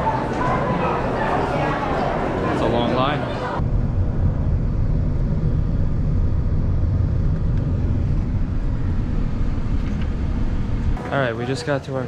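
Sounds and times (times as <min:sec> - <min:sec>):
faint engine hum: 0:03.5 - 0:11.0
vehicle rumble: 0:03.6 - 0:11.0.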